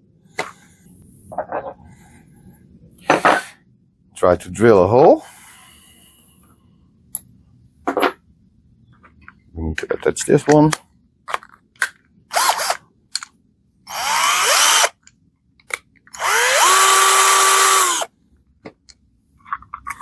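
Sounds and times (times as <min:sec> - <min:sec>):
cordless drill motor whining: 0:12.3 - 0:12.8, 0:13.9 - 0:14.9, 0:16.2 - 0:18.1.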